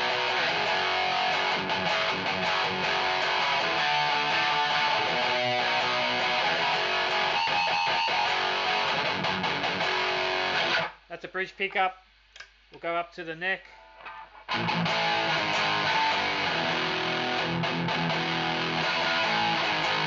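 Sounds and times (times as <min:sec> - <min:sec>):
distorted electric guitar riff: 0:00.0 - 0:11.1, 0:13.7 - 0:20.0.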